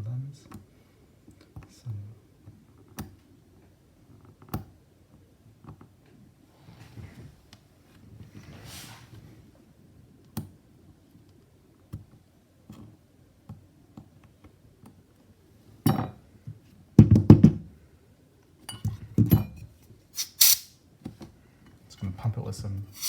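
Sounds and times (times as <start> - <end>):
short hiss: 20.2 - 20.8.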